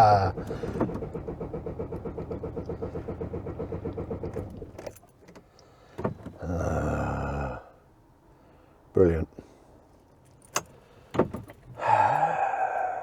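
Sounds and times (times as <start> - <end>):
van engine running unevenly: 0.0 - 5.0.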